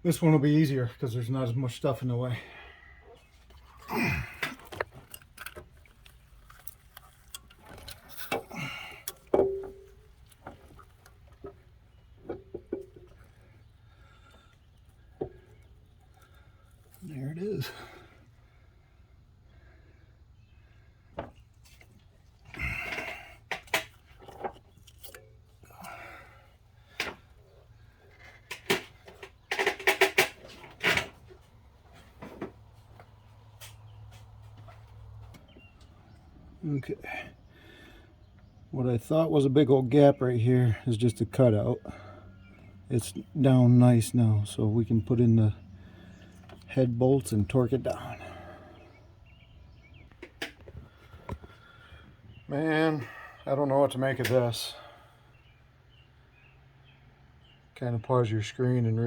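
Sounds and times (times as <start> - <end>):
light metal clicks and knocks: 4.4 - 13.5, 28.0 - 35.9
metal knocks: 9.3 - 10.0
ringing metallic clank: 9.4 - 10.0.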